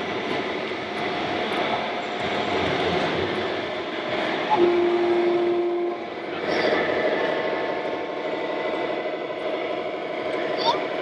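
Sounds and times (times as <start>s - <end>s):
horn steady note: 4.5s - 6.1s.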